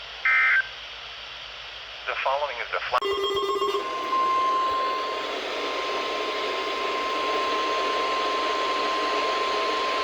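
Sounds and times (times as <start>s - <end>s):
radio static: 2.1s - 3.0s
steady high alarm tone: 3.0s - 10.0s.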